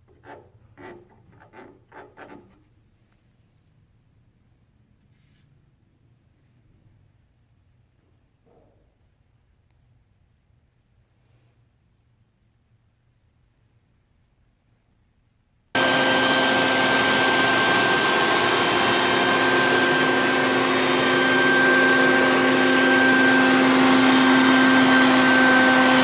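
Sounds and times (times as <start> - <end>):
electric motor whining: 15.8 - 26.0.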